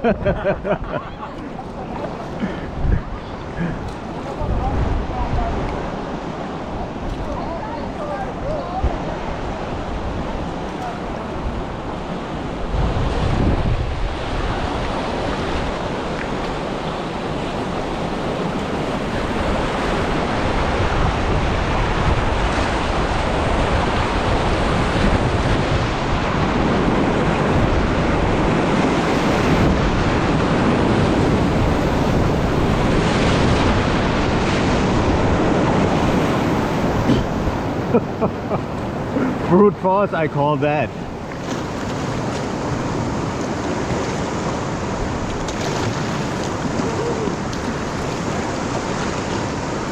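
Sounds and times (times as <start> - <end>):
wind buffeting microphone: 0.0 - 39.5
river rapid rushing: 0.0 - 49.9.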